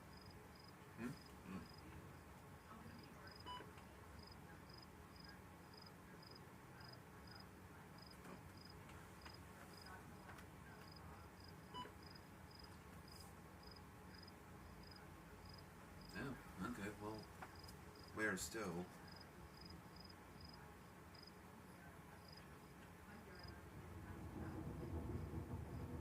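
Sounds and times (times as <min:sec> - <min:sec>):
crickets chirping: 0:00.0 - 0:01.8, 0:04.2 - 0:07.4, 0:08.0 - 0:08.8, 0:10.8 - 0:12.8, 0:13.6 - 0:16.1, 0:17.2 - 0:18.2, 0:19.0 - 0:21.4, 0:22.2 - 0:22.5
low background hum: 0:00.0 - 0:26.0.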